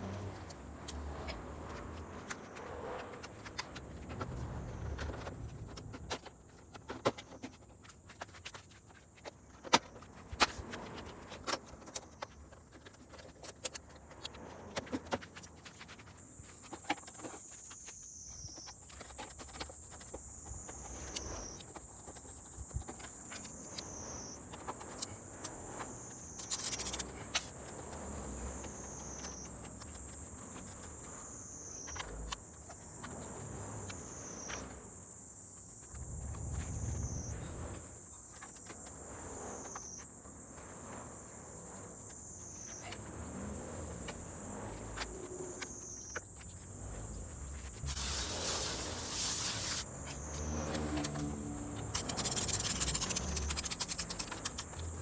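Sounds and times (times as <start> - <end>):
insect buzzing call: 42.0 - 54.3
sharp clicks and knocks: 50.4 - 54.9.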